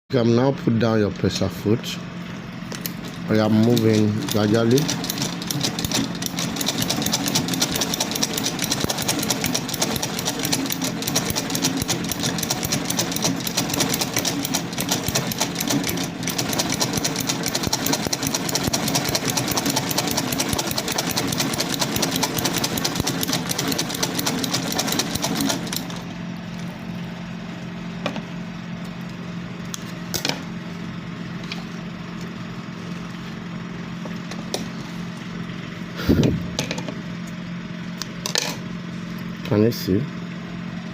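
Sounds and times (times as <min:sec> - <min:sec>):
sewing machine stitching: 0:03.0 - 0:26.1.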